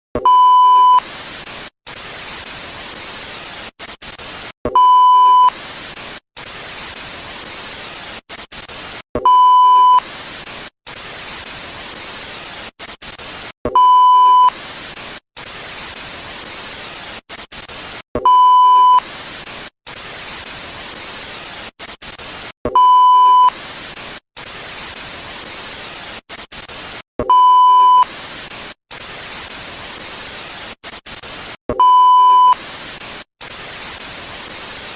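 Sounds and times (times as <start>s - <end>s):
test tone beeps: 0.2s - 1.0s, 31.8s - 32.6s.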